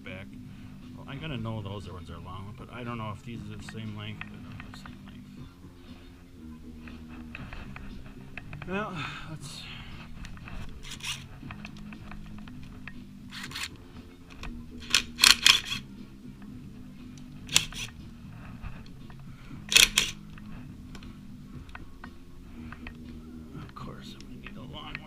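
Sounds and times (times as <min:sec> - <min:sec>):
steady low hum: 0:00.0 - 0:25.0
hand tools rasping and clicking: 0:10.0 - 0:15.8, 0:17.2 - 0:18.0, 0:18.8 - 0:21.1
steel bolts being handled: 0:10.3 - 0:13.8.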